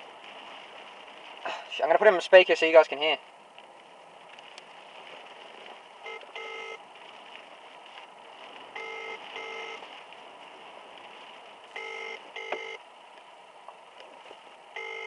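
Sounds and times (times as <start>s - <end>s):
telephone ringback tone: 6.0s - 6.8s, 8.8s - 9.8s, 11.8s - 12.8s, 14.8s - 15.0s.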